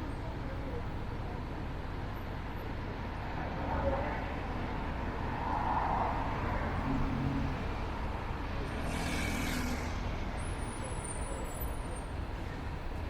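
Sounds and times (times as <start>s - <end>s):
tram rumbling: 6.6s - 13.0s
faint high-pitched squeal: 8.6s - 12.1s.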